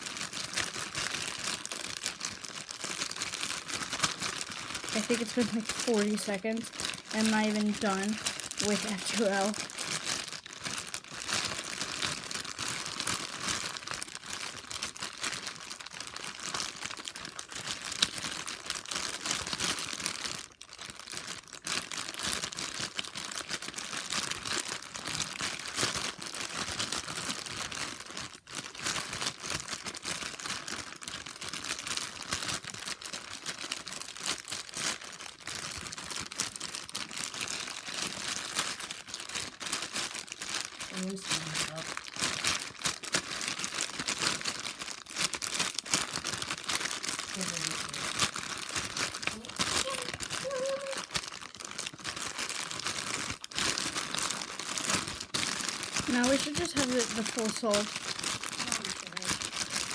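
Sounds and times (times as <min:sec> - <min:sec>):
plastic bag crinkling: 0:00.0 - 0:59.9.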